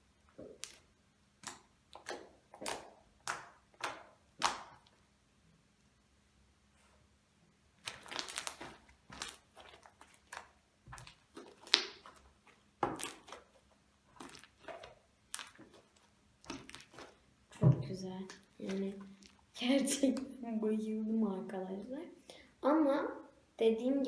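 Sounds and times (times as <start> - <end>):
slime squelching and crackling: 0.2 - 5.0, 7.8 - 20.4.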